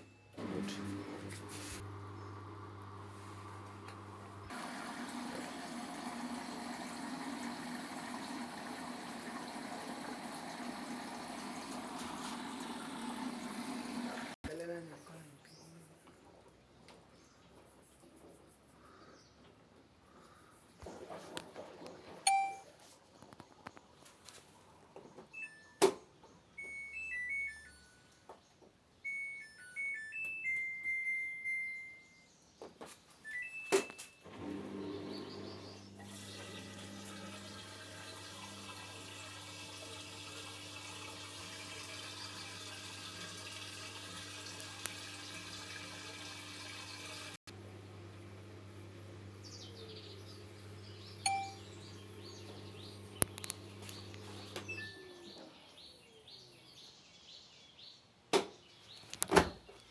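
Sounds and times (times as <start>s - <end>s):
water rushing in washing machine: 0.4s - 14.4s, 34.3s - 54.8s
washing machine beeping melody: 22.3s - 22.7s, 25.4s - 25.8s, 26.5s - 28.2s, 29.0s - 32.3s, 33.2s - 35.1s, 50.3s - 55.3s.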